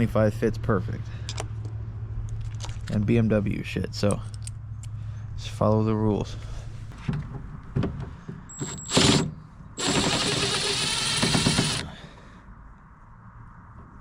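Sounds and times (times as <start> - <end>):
power driver rattling whine: 8.5 - 12.0.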